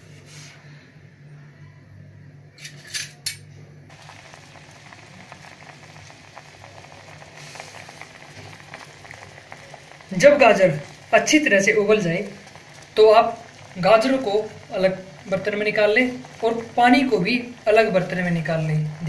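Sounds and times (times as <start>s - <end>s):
water boiling in a pot: 3.9s - 19.0s.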